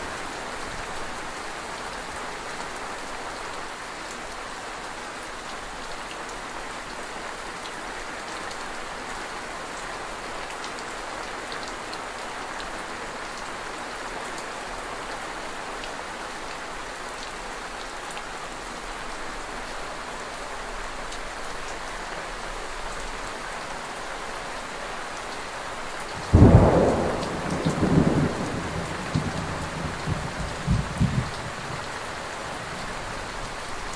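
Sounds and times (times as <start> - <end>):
steady rain falling: 0.0 - 33.9
loud rumbling thunderclap: 26.2 - 32.1.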